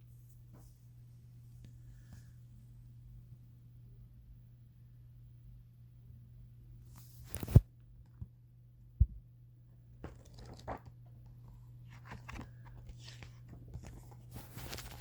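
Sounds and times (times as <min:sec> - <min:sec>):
steady low hum: 0:00.0 - 0:15.0
rustling and crinkling: 0:10.0 - 0:15.0.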